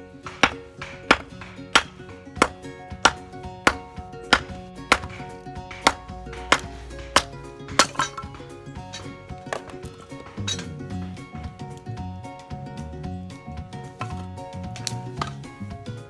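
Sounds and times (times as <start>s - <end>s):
sustained musical notes: 0.1s - 12.2s
sharp knocks: 0.2s - 10.6s.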